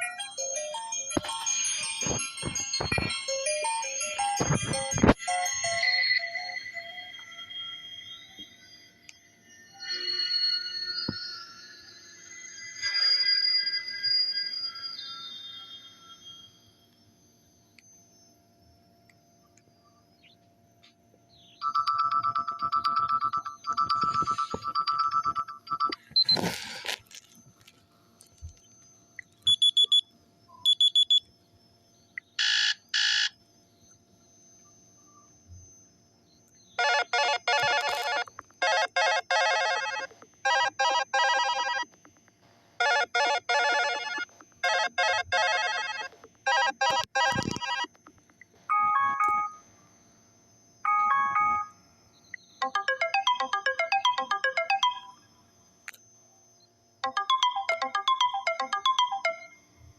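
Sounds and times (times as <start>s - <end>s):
phone ringtone: 0.0s - 8.6s, 21.6s - 26.9s, 32.4s - 33.3s, 36.8s - 42.0s, 42.8s - 48.0s, 48.7s - 49.6s, 50.9s - 51.8s, 52.6s - 55.3s, 57.0s - 59.6s
phone double beeps: 29.5s - 30.0s, 30.6s - 31.2s
phone notification chimes: 52.6s - 55.1s, 57.0s - 59.5s.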